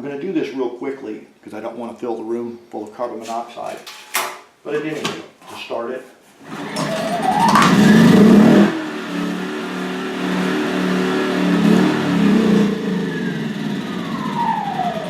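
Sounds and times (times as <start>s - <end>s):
recoil starter whine: 6.4s - 15.0s
generator engine running: 6.5s - 15.0s.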